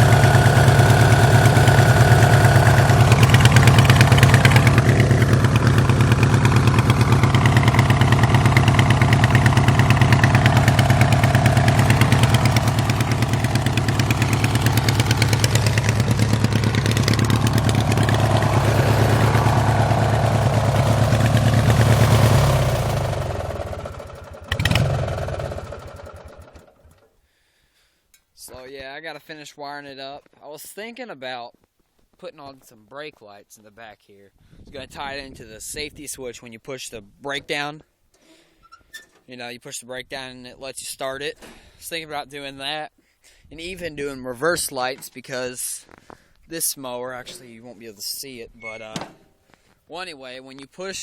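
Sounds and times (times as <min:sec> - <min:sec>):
engine winding down: 0:00.0 - 0:27.0
lawn tractor engine idling: 0:00.0 - 0:27.0.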